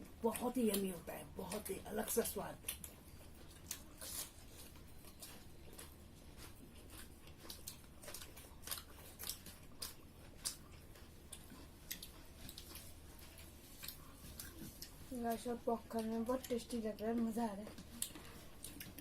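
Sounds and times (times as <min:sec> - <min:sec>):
chewing and mouth sounds: 0:00.0 - 0:19.0
low steady hum: 0:00.0 - 0:19.0
small clicks and smacks: 0:02.6 - 0:03.9, 0:07.3 - 0:19.0.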